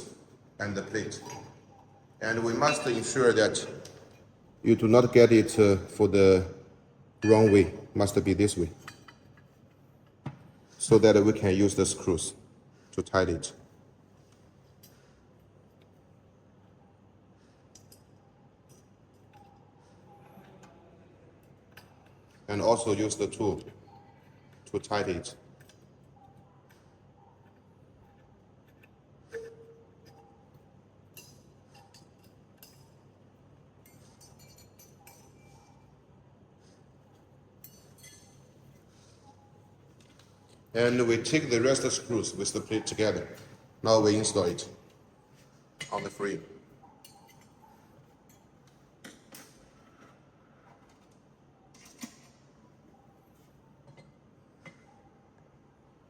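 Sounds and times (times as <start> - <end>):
metallic clinks of tool and screws: 31.1 - 33.1, 33.8 - 35.8, 37.1 - 38.8, 47.0 - 47.6.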